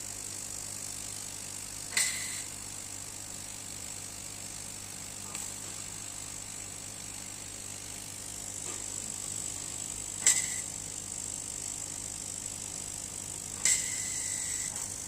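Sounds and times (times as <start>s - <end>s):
laser cutter hum and hiss: 0.0s - 15.0s
sharp click: 1.9s - 2.5s, 10.2s - 10.7s, 13.6s - 15.0s.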